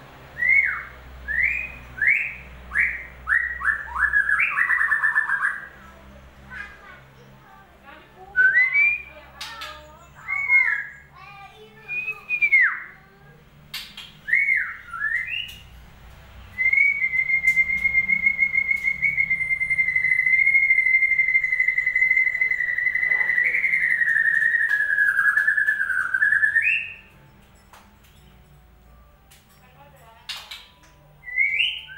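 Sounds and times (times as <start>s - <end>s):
long trilled whistle: 16.6s - 27.0s.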